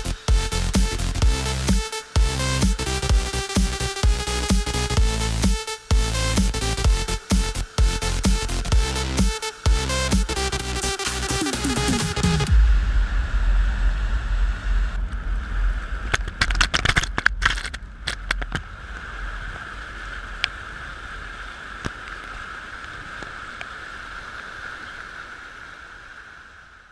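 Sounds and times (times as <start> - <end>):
clicks and crackles: 16.0 - 19.1.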